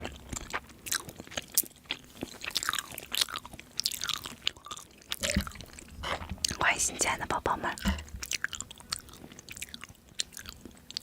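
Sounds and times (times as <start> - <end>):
person chewing and eating: 0.0 - 11.0.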